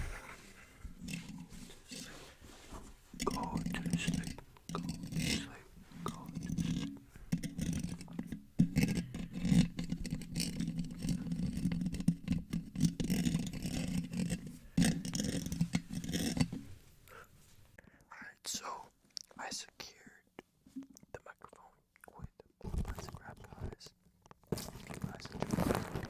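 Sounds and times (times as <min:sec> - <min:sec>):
fingers scratching microphone: 0:03.2 - 0:16.6, 0:24.5 - 0:26.0.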